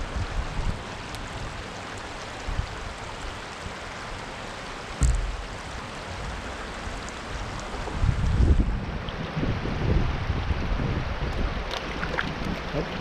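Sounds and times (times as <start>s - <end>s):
creek water running: 0.0s - 13.0s
sudden thump: 5.0s - 5.5s.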